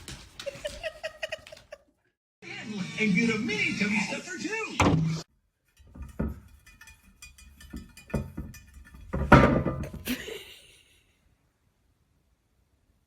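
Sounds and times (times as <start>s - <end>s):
knocks and thumps: 5.8s - 10.1s.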